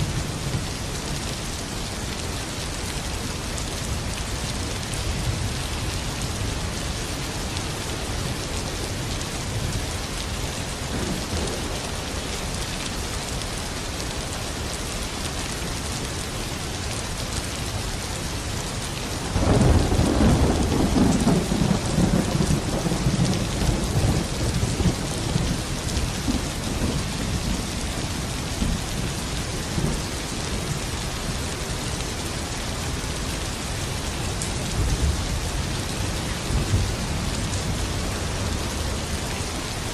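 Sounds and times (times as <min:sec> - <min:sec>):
steady rain: 0:00.0 - 0:39.9
thunder rumbling: 0:19.2 - 0:30.9.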